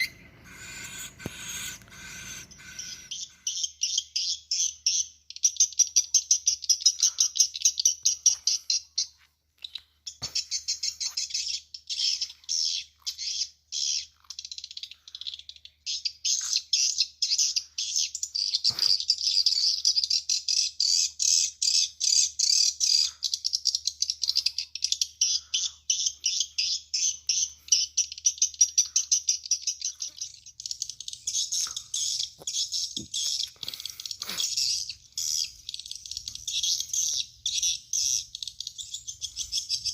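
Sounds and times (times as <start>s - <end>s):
high chirps through speakers: 0.0s - 8.7s, 24.1s - 39.9s.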